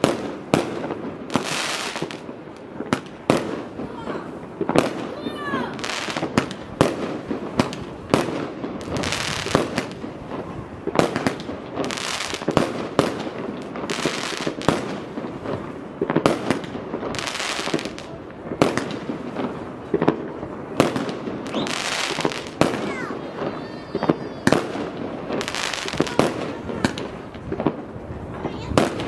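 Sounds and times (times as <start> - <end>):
crackling spray of fireworks: 0.0 - 29.0.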